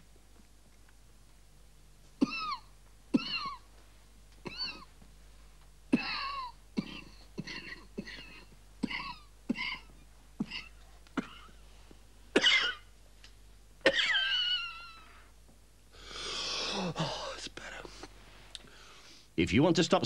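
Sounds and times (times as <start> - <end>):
person coughing with wheeze: 2.2 - 3.7, 4.4 - 4.9, 5.9 - 11.6, 12.3 - 12.9, 13.8 - 15.1.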